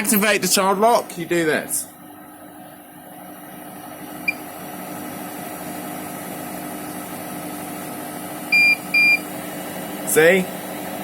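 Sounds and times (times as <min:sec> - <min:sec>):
washing machine hum: 0:00.0 - 0:11.0
control panel beep: 0:04.3 - 0:04.5, 0:08.5 - 0:09.2.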